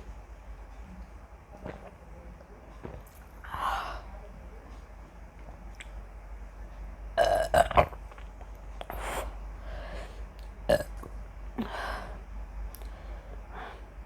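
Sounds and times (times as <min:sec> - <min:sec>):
breathy sounds: 0:03.4 - 0:04.1, 0:11.6 - 0:14.0.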